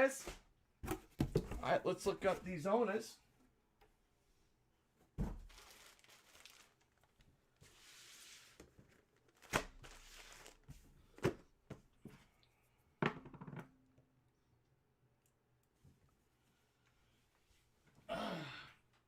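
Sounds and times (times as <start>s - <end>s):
paper rustling: 5.4s - 10.8s.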